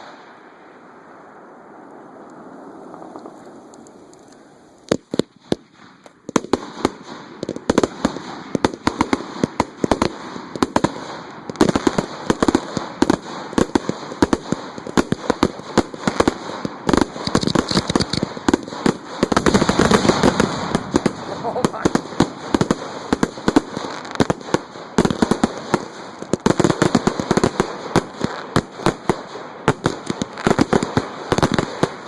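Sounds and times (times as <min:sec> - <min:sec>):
fireworks bangs and cracks: 0:00.0 - 0:00.7, 0:01.7 - 0:04.2, 0:04.8 - 0:32.0.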